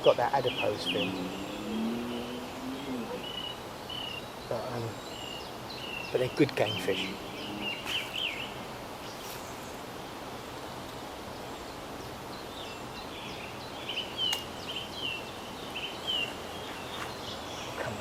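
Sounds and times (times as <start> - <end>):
outdoor hiss: 0.0 - 18.0.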